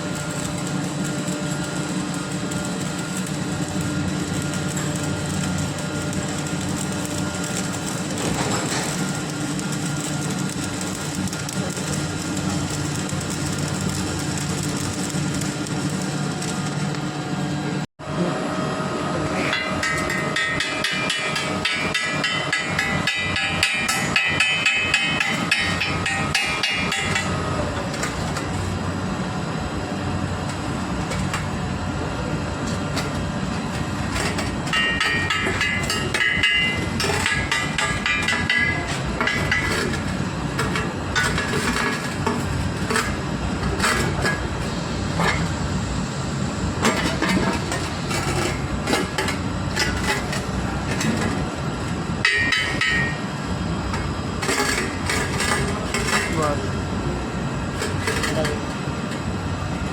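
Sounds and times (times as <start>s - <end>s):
steady machine hum: 0.0s - 59.9s
hammer striking steel pipe: 19.5s - 27.4s, 34.7s - 39.8s, 52.2s - 53.2s.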